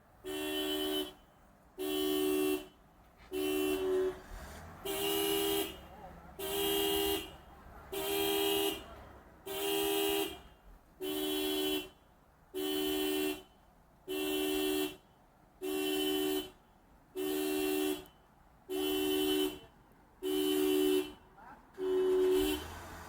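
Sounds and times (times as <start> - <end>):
car horn two-note blasts: 0.2 - 1.2, 1.8 - 12.0, 17.2 - 23.0.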